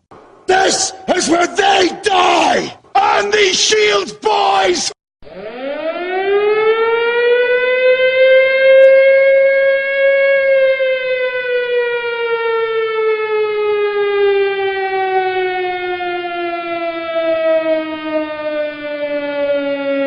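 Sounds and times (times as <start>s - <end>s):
air-raid siren wailing: 5.2s - 20.0s.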